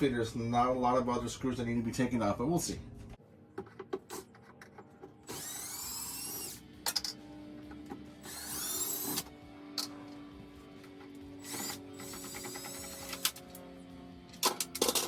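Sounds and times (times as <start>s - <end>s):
power drill whine: 5.2s - 6.6s, 8.2s - 9.3s, 11.3s - 13.6s.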